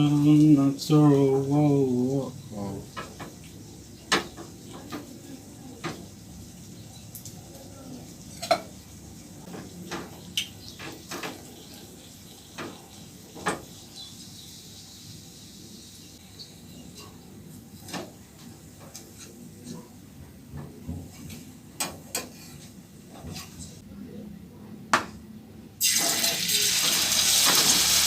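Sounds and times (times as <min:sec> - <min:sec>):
pots and dishes clinking: 0:08.3 - 0:08.8, 0:21.0 - 0:23.6.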